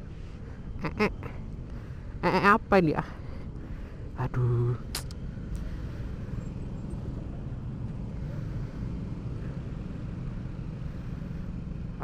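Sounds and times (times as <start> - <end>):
wind and road noise: 0.0 - 12.0
motorcycle engine running: 5.2 - 12.0.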